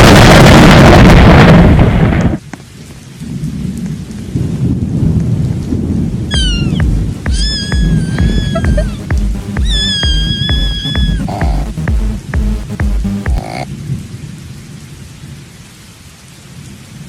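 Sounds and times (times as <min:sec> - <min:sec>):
loud thunderclap: 0:00.0 - 0:02.4, 0:03.3 - 0:09.4
low rumbling thunder: 0:00.0 - 0:02.4, 0:03.2 - 0:08.8
rain: 0:00.0 - 0:17.0
high cat-like meows: 0:06.3 - 0:09.0, 0:09.6 - 0:11.6
thudding beat: 0:06.3 - 0:13.6.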